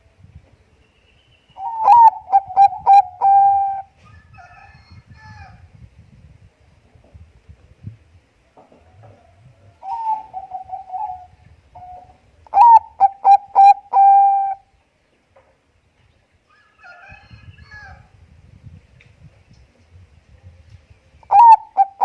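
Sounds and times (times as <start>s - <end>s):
dove cooing: 1.6s - 3.9s, 9.0s - 14.7s, 21.3s - 22.0s.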